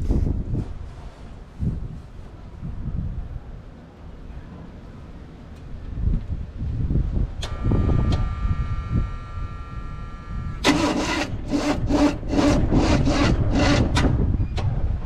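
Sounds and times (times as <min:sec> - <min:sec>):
steady high whine: 0:06.6 - 0:14.2
truck engine cranking: 0:07.4 - 0:14.8.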